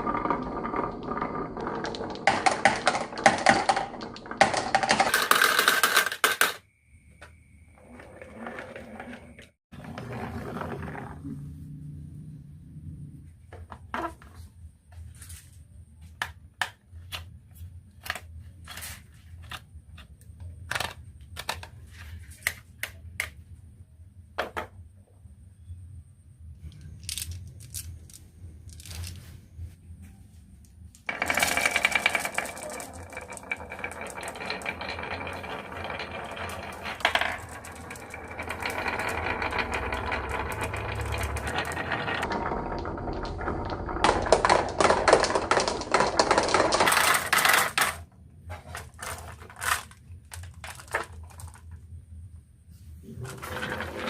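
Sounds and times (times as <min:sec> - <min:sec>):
marbles clicking on a marble run: 0:00.0 - 0:06.6, 0:31.0 - 0:48.0.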